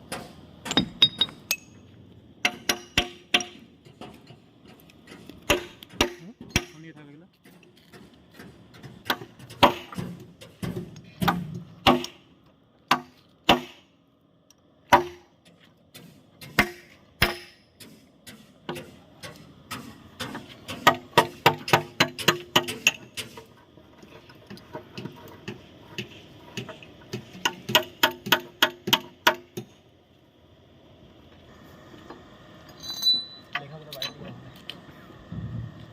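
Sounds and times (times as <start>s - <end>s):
hammer striking steel: 0.1s - 4.2s, 5.1s - 8.1s, 9.0s - 12.3s, 12.9s - 13.9s, 14.9s - 15.3s, 16.0s - 23.4s, 26.0s - 29.8s.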